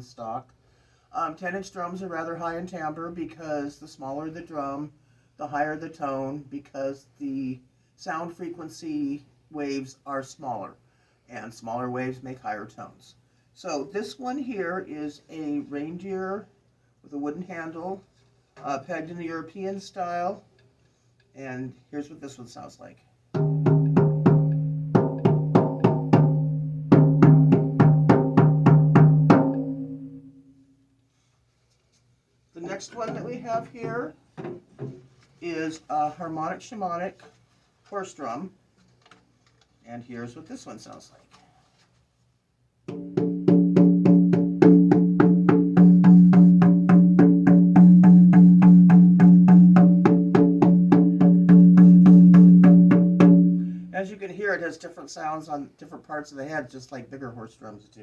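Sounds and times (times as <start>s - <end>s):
frame drum strokes: 23.4s - 30.3s, 32.8s - 35.4s, 42.9s - 53.8s.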